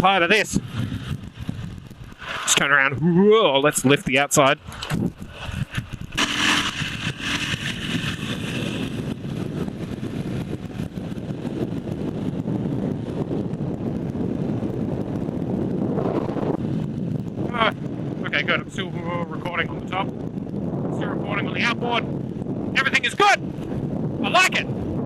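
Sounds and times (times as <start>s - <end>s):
motorcycle engine running: 0.6s - 2.4s, 4.8s - 20.9s.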